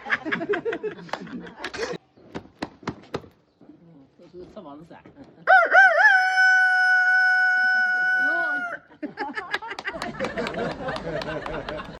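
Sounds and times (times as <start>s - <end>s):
rooster crowing: 5.5s - 8.8s.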